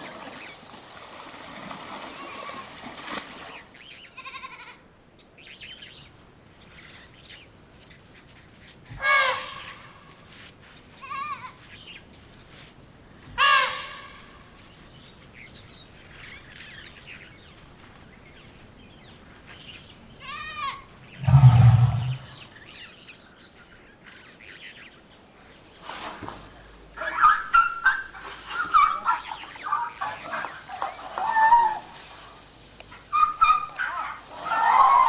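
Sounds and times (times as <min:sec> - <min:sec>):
elephants trumpeting: 0:21.2 - 0:22.4
loud low elephant blast: 0:21.2 - 0:22.4.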